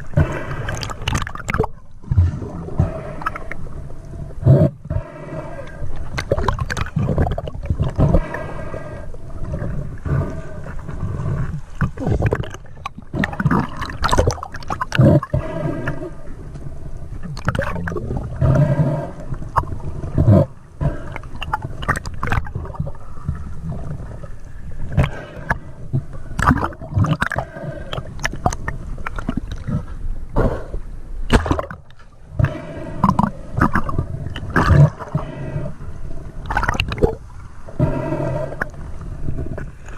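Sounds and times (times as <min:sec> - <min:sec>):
water gurgling and sloshing: 0:00.0 - 0:39.9.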